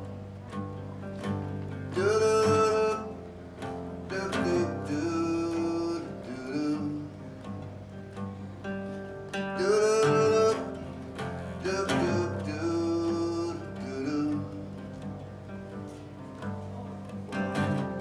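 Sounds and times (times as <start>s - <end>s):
bowed cello melody: 0.0s - 18.0s
guitar accompaniment: 0.0s - 18.0s.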